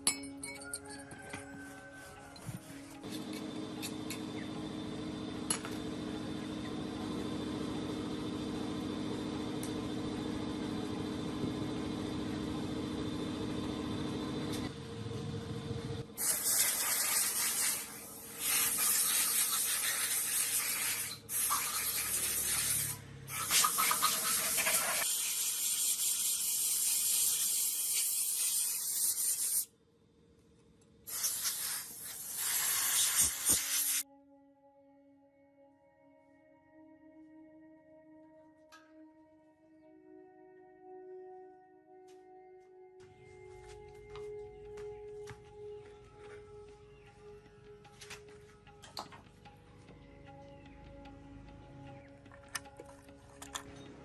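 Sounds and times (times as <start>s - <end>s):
machine hum: 2.3s - 16.2s
compressed air hissing bursts: 16.2s - 29.7s, 31.1s - 34.0s.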